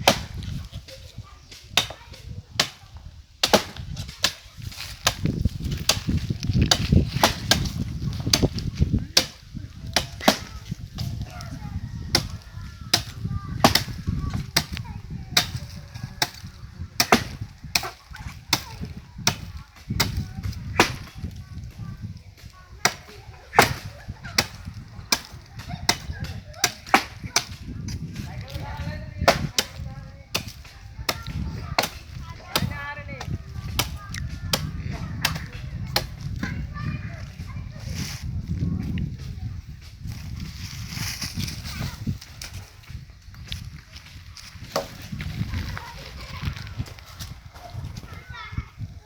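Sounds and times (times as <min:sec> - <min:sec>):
blade chopping tree trunk: 0:00.0 - 0:01.0, 0:01.6 - 0:36.6, 0:44.6 - 0:45.2.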